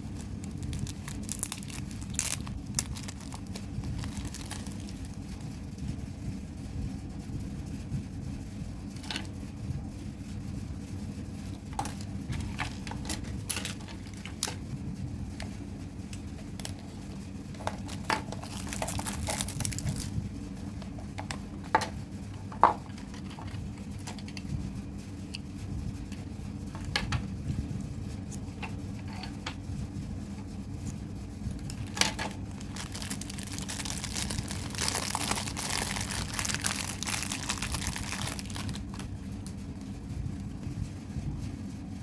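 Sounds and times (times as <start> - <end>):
plastic packaging crinkling: 0.0 - 5.6, 11.5 - 14.6, 16.2 - 24.3, 31.6 - 40.5.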